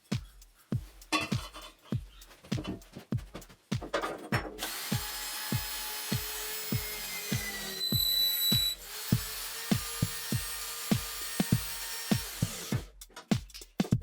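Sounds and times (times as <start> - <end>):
power tool running: 4.6 - 12.8.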